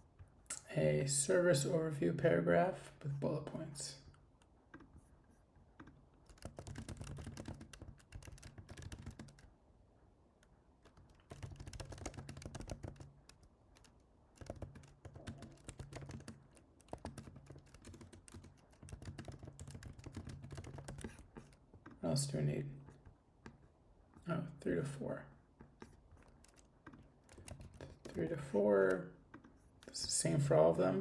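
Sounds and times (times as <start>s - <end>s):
typing on a computer keyboard: 5.8s - 9.5s, 10.4s - 22.0s, 25.7s - 30.0s.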